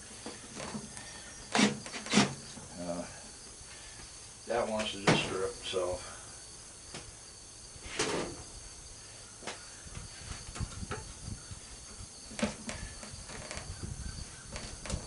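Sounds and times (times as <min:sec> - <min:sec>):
crickets chirring: 0:00.0 - 0:15.0
loud scrape: 0:01.5 - 0:02.4.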